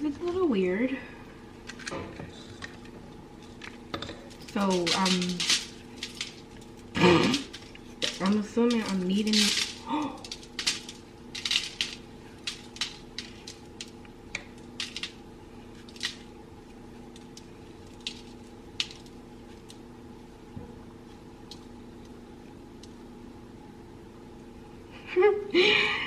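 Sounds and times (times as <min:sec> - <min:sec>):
steady low hum: 0:00.0 - 0:26.0
foil crinkling: 0:01.6 - 0:19.8
dough squishing on foil: 0:01.6 - 0:22.2.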